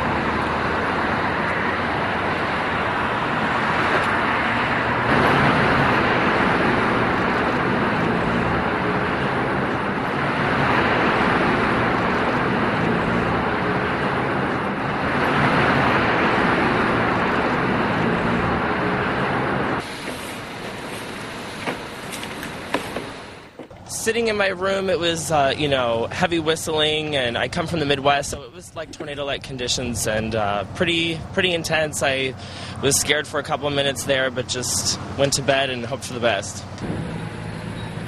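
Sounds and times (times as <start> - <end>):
strong gusty wind: 0.0 - 24.4.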